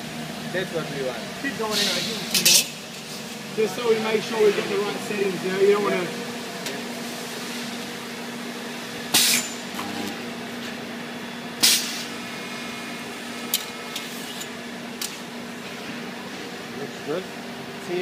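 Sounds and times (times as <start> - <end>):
electrical hum: 2.6 - 13.9.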